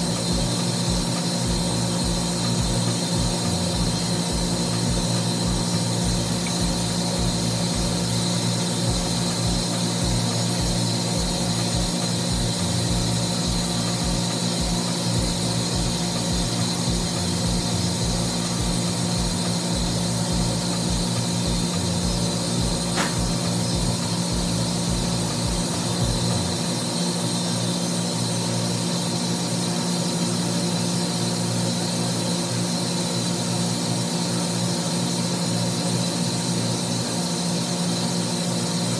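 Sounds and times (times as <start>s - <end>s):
low rhythmic throb: 0.0s - 27.2s
machinery hum with tones: 0.0s - 38.9s.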